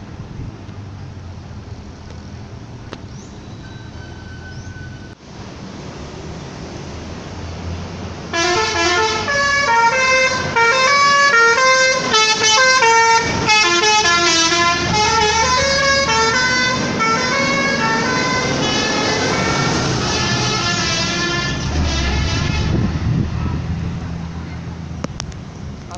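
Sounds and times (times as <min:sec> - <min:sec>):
bus engine running: 0:00.0 - 0:25.9
multi-tone bus horn tune: 0:08.3 - 0:23.1.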